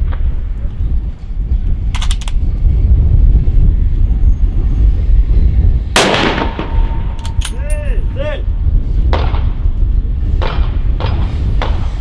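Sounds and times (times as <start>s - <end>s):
wind buffeting microphone: 0.0s - 12.0s
quick sharp clicks: 2.0s - 2.4s, 7.2s - 7.6s
rifle shot: 2.0s - 2.4s, 6.0s - 7.6s.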